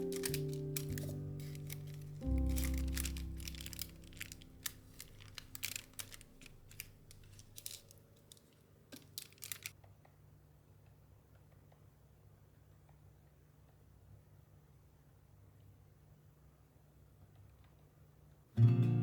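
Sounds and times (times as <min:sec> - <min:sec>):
soft music chord: 0:00.0 - 0:05.4, 0:18.6 - 0:19.0
small crackles and clicks: 0:00.0 - 0:09.8.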